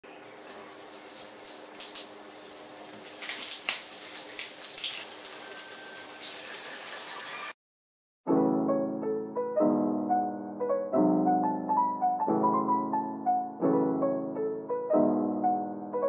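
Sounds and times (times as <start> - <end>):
running water hiss: 0.1 - 7.6
jazz piano tune: 0.4 - 7.6, 8.3 - 16.0.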